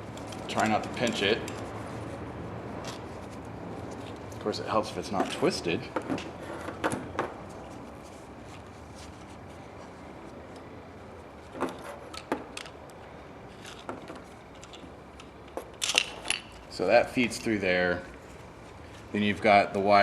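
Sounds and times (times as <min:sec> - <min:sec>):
clicks and knocks of small parts: 0:11.5 - 0:16.7.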